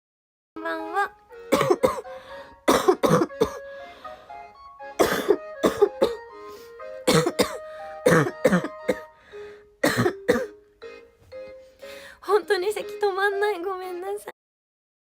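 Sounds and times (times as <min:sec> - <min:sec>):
woman coughing: 0:01.5 - 0:02.1, 0:02.7 - 0:03.6, 0:05.0 - 0:06.2, 0:07.1 - 0:09.1, 0:09.8 - 0:10.5.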